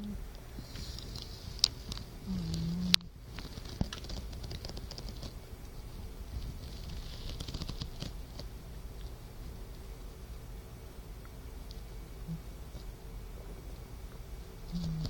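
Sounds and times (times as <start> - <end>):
soft snoring breaths: 0.0 - 3.6, 12.0 - 15.0.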